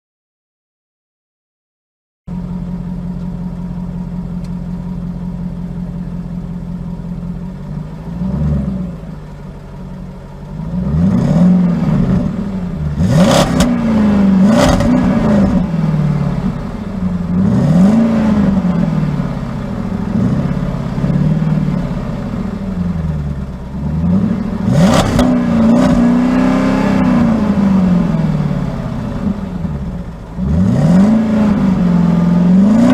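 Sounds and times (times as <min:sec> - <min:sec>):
car engine idling and revving: 0:02.3 - 0:32.9.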